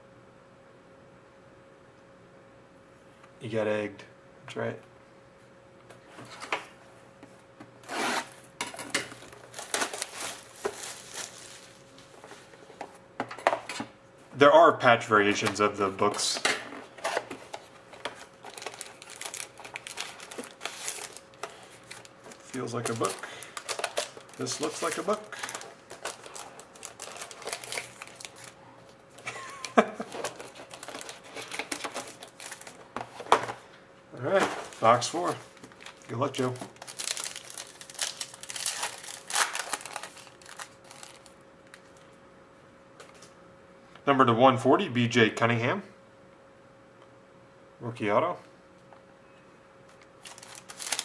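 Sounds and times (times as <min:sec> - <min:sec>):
card packaging rustling and crinkling: 0:07.8 - 0:13.0, 0:15.3 - 0:33.7, 0:34.3 - 0:42.0, 0:50.2 - 0:51.0.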